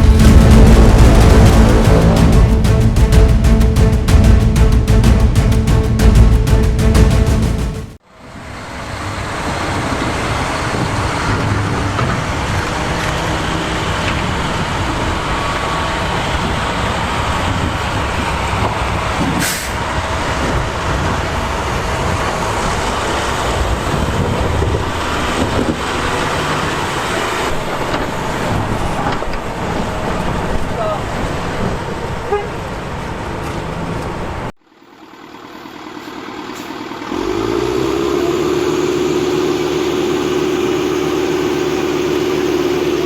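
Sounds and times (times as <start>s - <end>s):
city street traffic: 0.0s - 43.0s.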